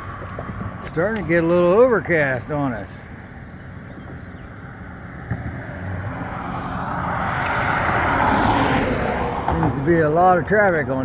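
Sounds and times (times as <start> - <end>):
passing vehicle tyres and engine: 0.0 - 11.0.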